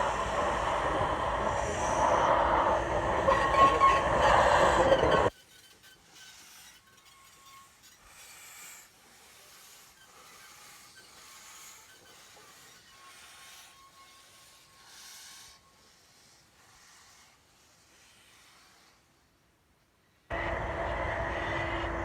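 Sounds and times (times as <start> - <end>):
steam locomotive hissing: 0.0 - 5.3, 20.3 - 22.0.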